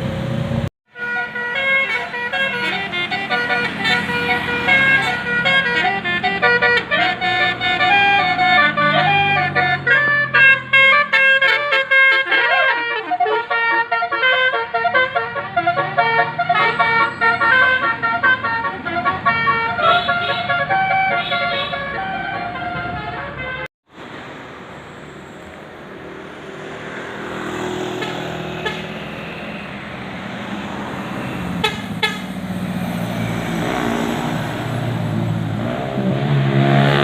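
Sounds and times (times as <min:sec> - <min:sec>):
musical air horn melody: 0:00.9 - 0:23.7, 0:27.9 - 0:29.6, 0:31.2 - 0:32.4.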